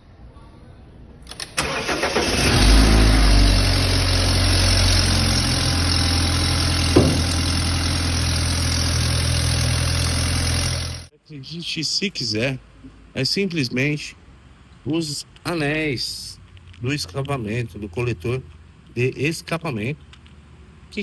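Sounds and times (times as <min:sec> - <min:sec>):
car engine starting and idling: 0:01.3 - 0:11.1
exhaust leak racket: 0:01.6 - 0:11.1
short knock: 0:07.0 - 0:07.5.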